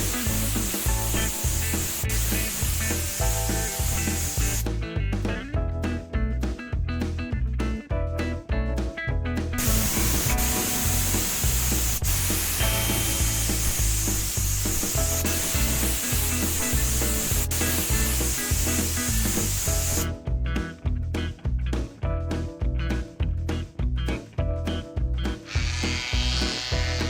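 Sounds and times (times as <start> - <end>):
spray hissing: 0.0 - 4.6, 9.6 - 20.1
background music with steady beat: 0.0 - 27.0.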